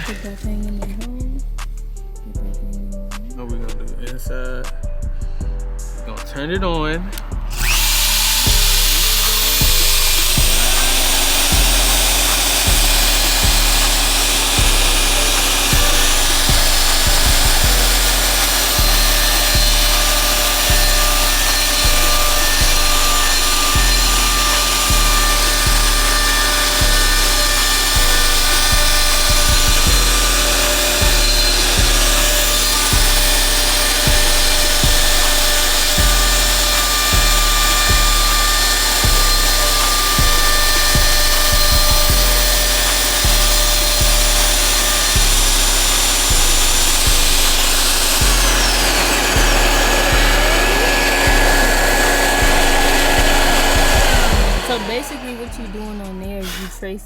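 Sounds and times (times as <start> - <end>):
wood router whine and cutting hiss: 0.0 - 0.6, 7.2 - 56.4
background music with bass beat: 0.0 - 57.0.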